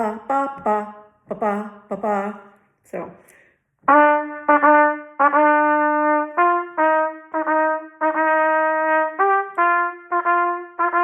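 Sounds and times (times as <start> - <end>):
solo trumpet playing: 3.8 - 11.0.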